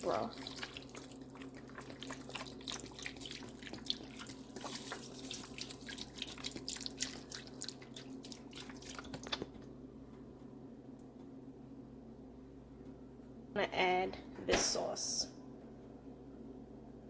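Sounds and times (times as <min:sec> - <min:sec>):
broth pouring and splashing: 0:00.0 - 0:09.6.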